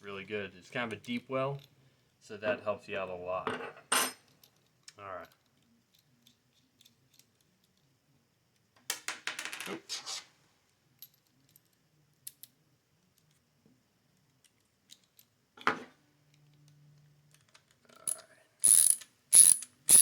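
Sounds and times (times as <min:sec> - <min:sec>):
ratchet clicking: 0:18.1 - 0:20.0.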